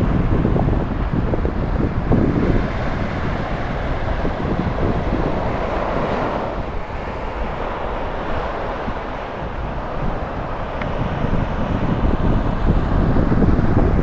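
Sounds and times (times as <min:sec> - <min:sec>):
breaking surf: 0:00.0 - 0:14.0
wind rumbling on microphone: 0:00.0 - 0:14.0.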